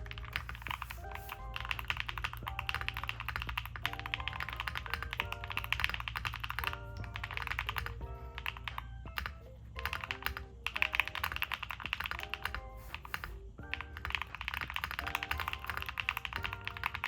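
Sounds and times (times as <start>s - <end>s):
background music: 0.0s - 17.0s
mechanical keyboard typing: 0.0s - 17.0s.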